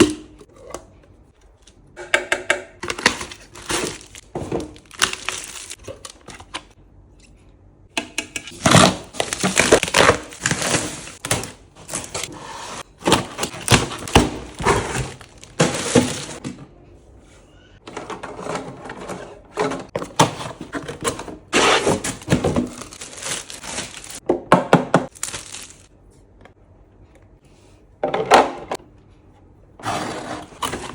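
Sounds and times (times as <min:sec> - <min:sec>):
plastic packaging crinkling: 0:02.8 - 0:06.5, 0:08.6 - 0:12.3, 0:13.0 - 0:16.4, 0:21.6 - 0:24.2, 0:25.1 - 0:25.9.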